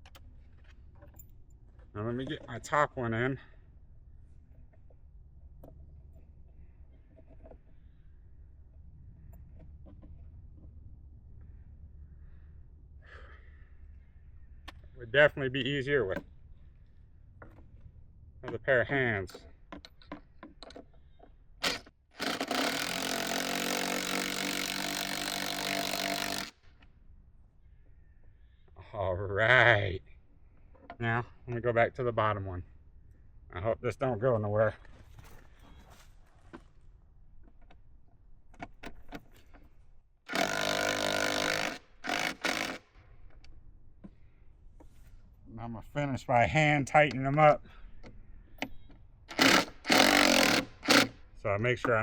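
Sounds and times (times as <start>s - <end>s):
power driver running: 21.6s - 26.5s, 40.3s - 42.8s, 49.3s - 51.1s.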